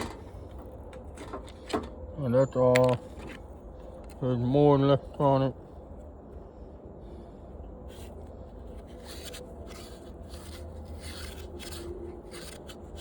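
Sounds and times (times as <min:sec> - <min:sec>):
rubbing and scraping of machine parts: 0:00.0 - 0:04.2, 0:07.9 - 0:13.0.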